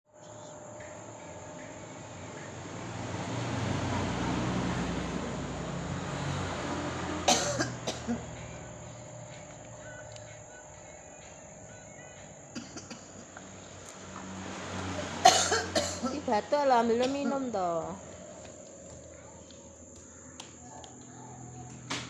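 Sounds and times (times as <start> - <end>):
woman coughing: 7.3 - 8.3, 12.6 - 13.2, 15.0 - 16.3, 16.9 - 17.6.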